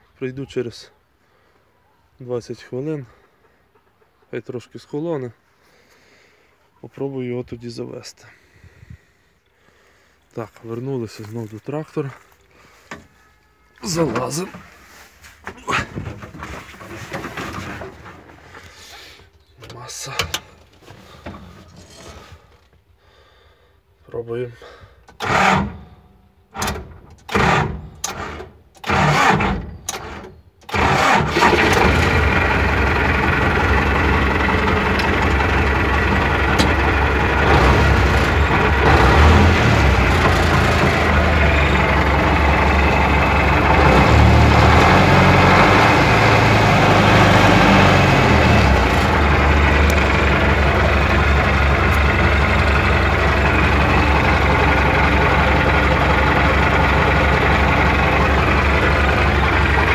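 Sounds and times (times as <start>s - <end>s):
tractor diesel engine running: 13.8s - 22.6s, 24.7s - 59.9s
starter motor cranking: 25.1s - 25.8s, 26.6s - 45.6s.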